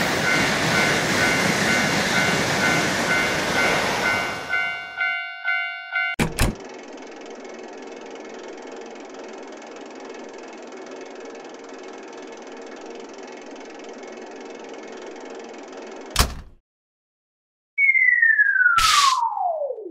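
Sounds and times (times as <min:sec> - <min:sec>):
machine running with rattly hiss: 0:06.2 - 0:16.4.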